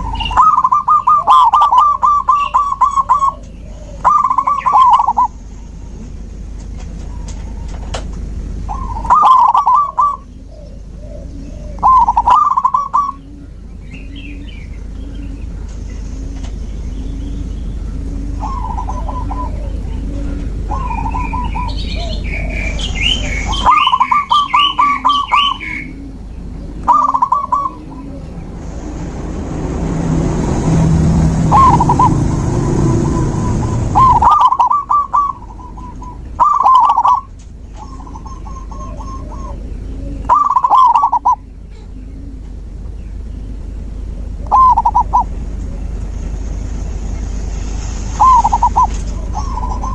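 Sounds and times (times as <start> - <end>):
small birds chirping: 0.0 - 29.2, 31.4 - 49.9
doves cooing: 0.0 - 47.3, 48.2 - 49.9
rushing noise: 13.7 - 37.7, 42.6 - 49.9.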